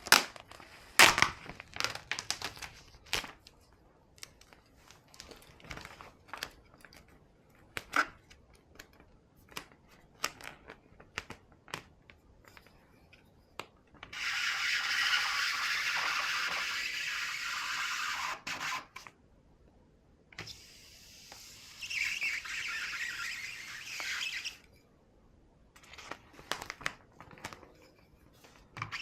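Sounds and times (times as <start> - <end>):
vinyl decal peeling and crinkling: 0.0 - 13.1, 20.5 - 24.6, 25.8 - 29.0
steady hiss: 20.4 - 24.6.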